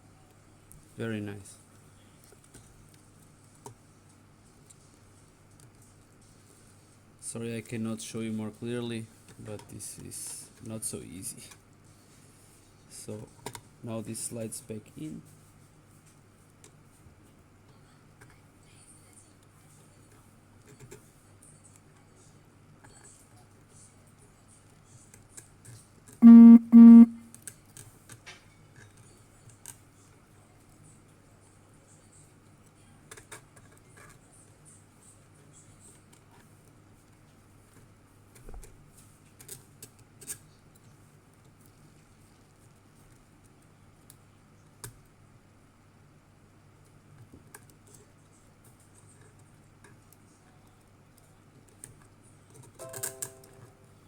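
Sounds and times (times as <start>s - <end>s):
low buzzy electronic beeps: 26.2s - 27.2s
low steady hum: 26.2s - 27.2s.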